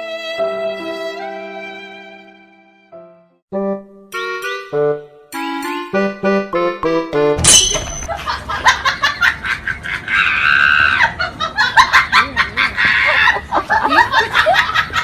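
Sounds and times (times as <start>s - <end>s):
people laughing: 8.1s - 15.0s.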